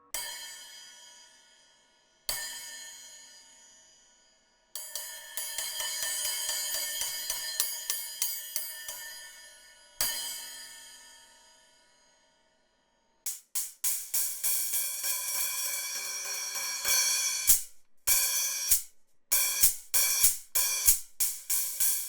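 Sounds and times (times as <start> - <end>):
rapid cymbal strikes: 13.3 - 22.0.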